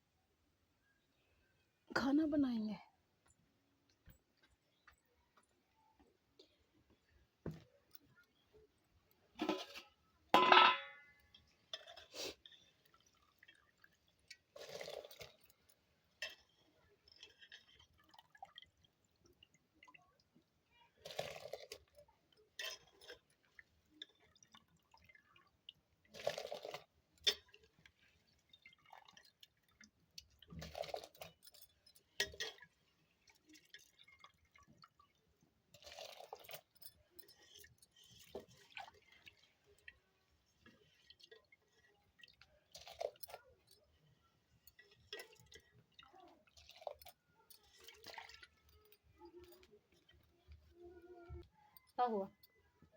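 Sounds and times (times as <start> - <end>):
ringing metal clink: 10.4 - 11.2
water swished and poured off: 11.7 - 50.3.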